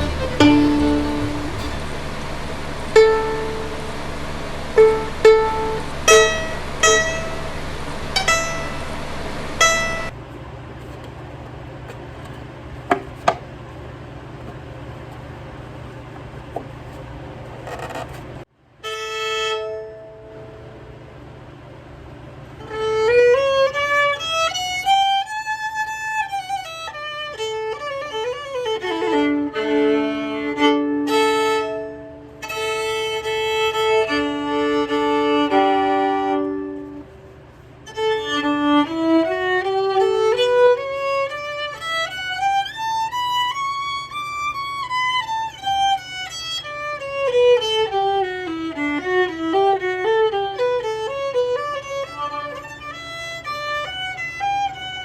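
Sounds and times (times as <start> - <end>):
solo violin playing scales: 0.0 - 10.2, 22.6 - 37.0, 37.8 - 55.0.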